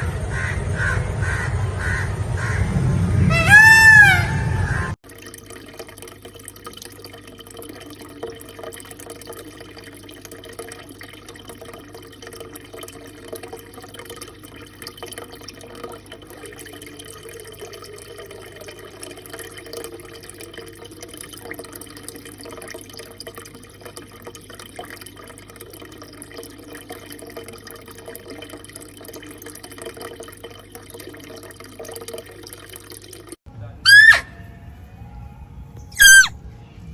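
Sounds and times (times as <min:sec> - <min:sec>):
low hum: 0:00.0 - 0:05.0
trickling water: 0:04.9 - 0:34.0.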